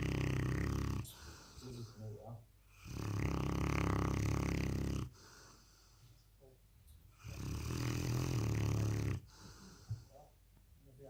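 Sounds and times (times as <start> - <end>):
puppy snoring: 0.0 - 2.1, 2.7 - 5.8, 7.2 - 9.9.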